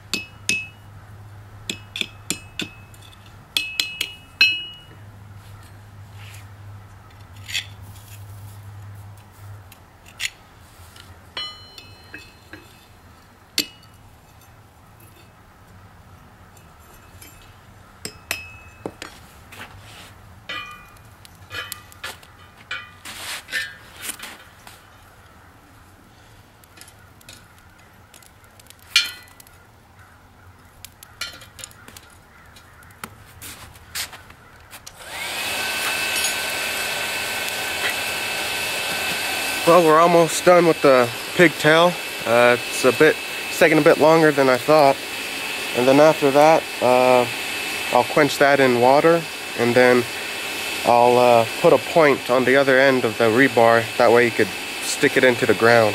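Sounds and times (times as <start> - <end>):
hammer on steel rebar: 0.0 - 0.8, 1.7 - 4.9, 11.4 - 12.8, 13.6 - 13.9, 18.0 - 19.1, 20.5 - 21.9
hair dryer whine: 35.0 - 55.9.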